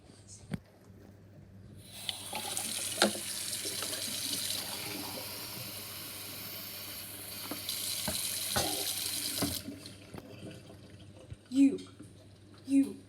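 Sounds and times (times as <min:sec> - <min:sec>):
tap water running into sink: 0:01.9 - 0:10.3.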